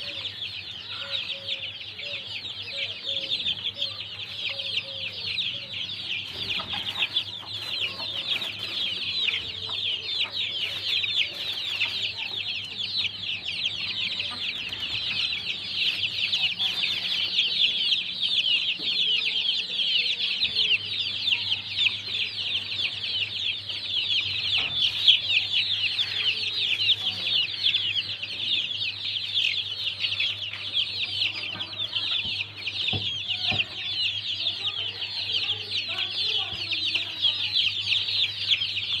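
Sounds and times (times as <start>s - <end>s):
chicks peeping: 0.0s - 39.0s.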